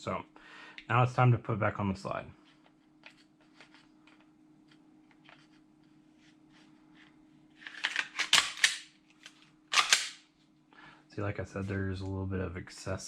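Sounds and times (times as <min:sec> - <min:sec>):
pistol slide clacking and rattling: 0:07.7 - 0:08.9, 0:09.7 - 0:10.2.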